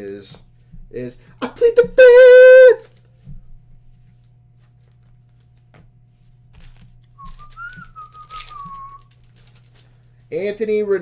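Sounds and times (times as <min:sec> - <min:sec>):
trading cards rustling: 0:04.2 - 0:10.3
person whistling: 0:07.2 - 0:09.1.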